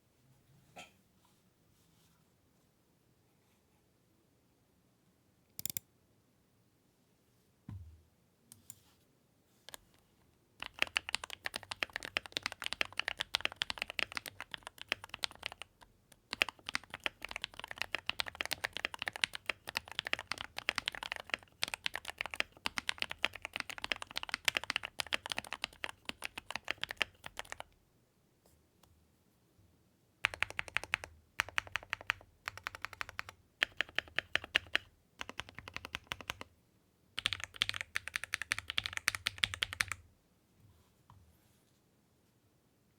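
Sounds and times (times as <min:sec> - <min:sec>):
mechanical keyboard typing: 0:10.6 - 0:27.7, 0:30.2 - 0:36.5, 0:37.2 - 0:40.0.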